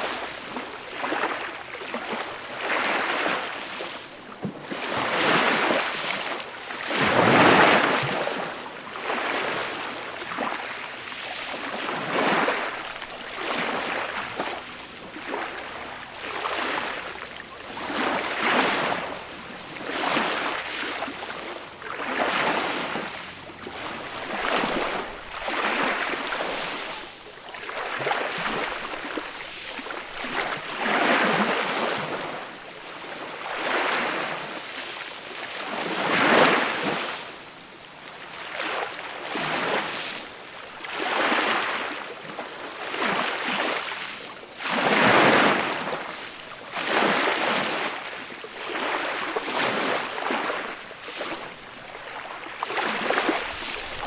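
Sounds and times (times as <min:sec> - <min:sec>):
small waves washing onto beach: 0:00.0 - 0:54.0.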